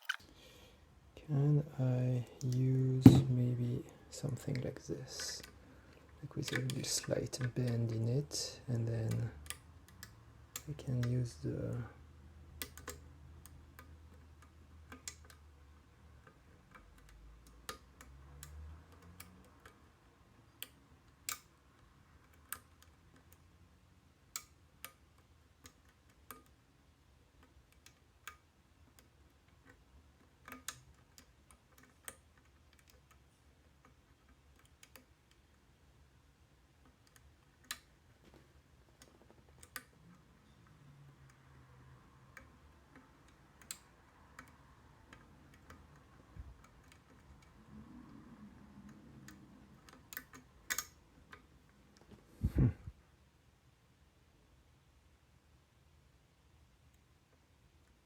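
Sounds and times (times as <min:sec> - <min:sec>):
metallic lock picking clicks: 0:20.6 - 0:21.6, 0:49.2 - 0:51.4.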